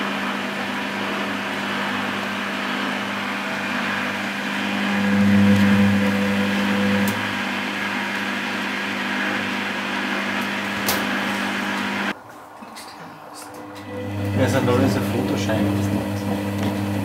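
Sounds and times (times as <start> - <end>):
washing machine humming: 0.0 - 12.2, 13.1 - 17.0.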